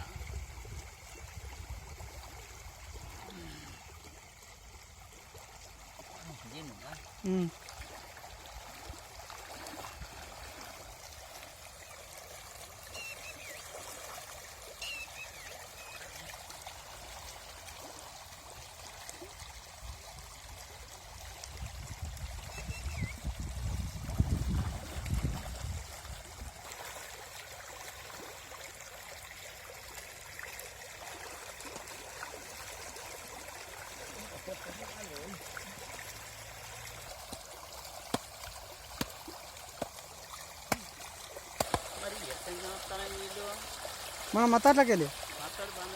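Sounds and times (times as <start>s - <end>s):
river water flowing: 0.0s - 45.9s.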